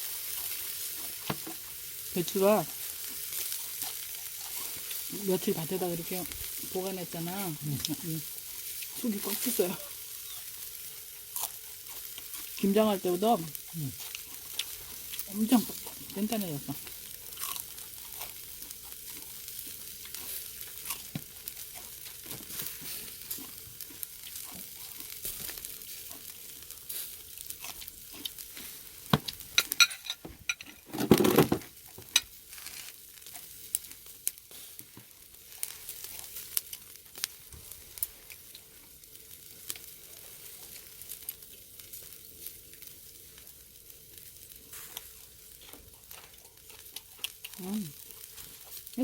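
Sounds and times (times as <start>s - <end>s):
fat crackling and popping: 0.0s - 49.0s
meat sizzling on a grill: 0.0s - 49.0s
clatter and rustling: 29.2s - 32.9s.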